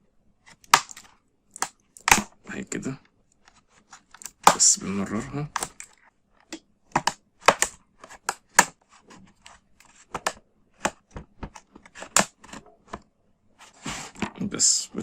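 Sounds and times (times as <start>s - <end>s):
plastic clips snapping loose: 0.6s - 2.3s.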